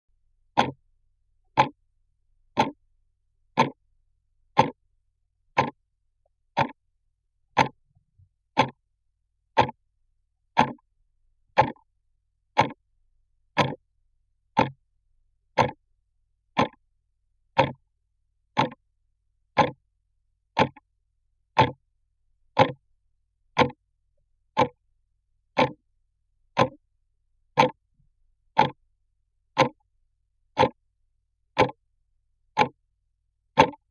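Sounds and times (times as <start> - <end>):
clock ticking: 0.5 - 0.8, 1.5 - 1.8, 2.5 - 2.8, 3.6 - 3.8, 4.6 - 4.8, 5.6 - 5.8, 6.6 - 6.8, 7.6 - 7.8, 8.6 - 8.8, 9.6 - 9.8, 10.6 - 10.8, 11.6 - 11.9, 12.6 - 12.8, 13.6 - 13.8, 14.6 - 14.8, 15.6 - 15.8, 16.6 - 16.8, 17.6 - 17.8, 18.6 - 18.8, 19.6 - 19.8, 20.6 - 20.9, 21.6 - 21.8, 22.6 - 22.8, 23.6 - 23.8, 24.6 - 24.8, 25.6 - 25.8, 26.6 - 26.8, 27.6 - 27.8, 28.6 - 28.8, 29.6 - 29.8, 30.6 - 30.8, 31.6 - 31.8, 32.6 - 32.8, 33.6 - 33.9.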